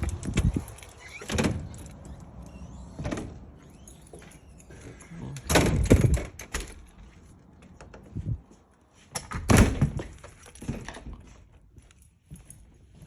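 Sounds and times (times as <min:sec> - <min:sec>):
door knocks and clunks: 0:05.4 - 0:06.9, 0:09.2 - 0:11.1.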